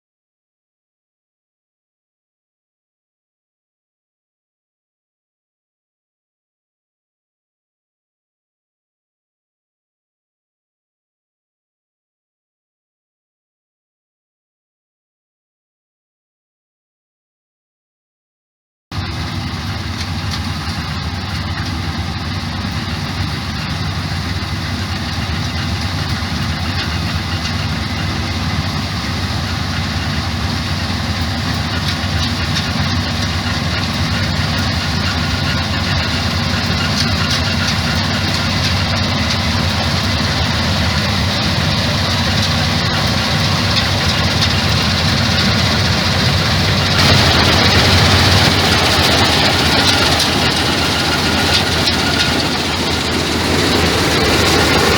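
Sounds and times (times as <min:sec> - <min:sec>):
combine harvester engine drone: 0:18.9 - 0:54.9.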